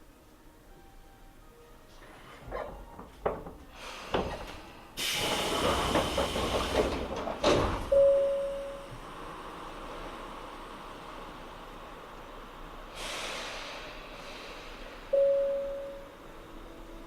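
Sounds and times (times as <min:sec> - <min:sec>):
hiss of air: 0:12.9 - 0:15.1
short steady tone: 0:15.1 - 0:16.1.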